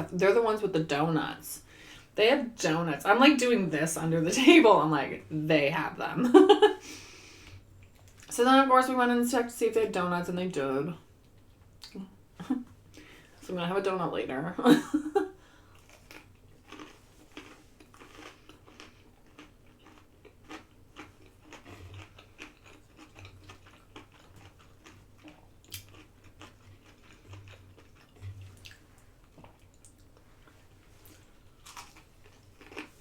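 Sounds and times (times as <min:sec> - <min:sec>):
person chewing food: 0:15.6 - 0:33.0.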